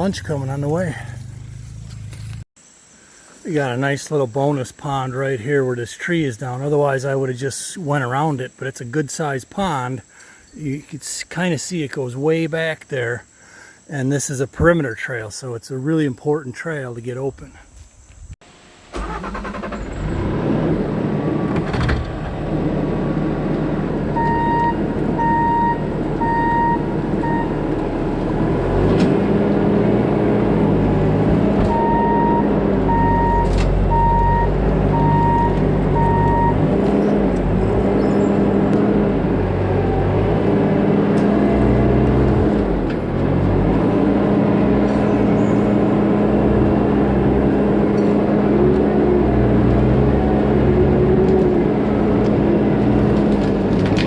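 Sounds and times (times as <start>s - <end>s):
diesel engine running under load: 0.0s - 2.4s, 18.7s - 54.0s
reversing alarm beeping: 24.1s - 27.8s, 31.7s - 36.7s.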